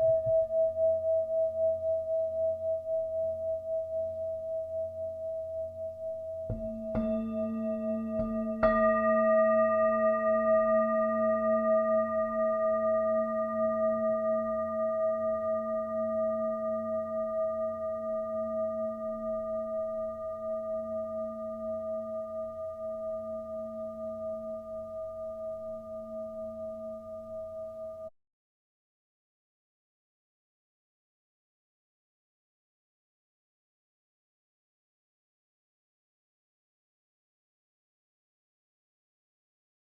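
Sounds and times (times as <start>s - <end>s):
singing bowl ringing: 0.0s - 28.1s.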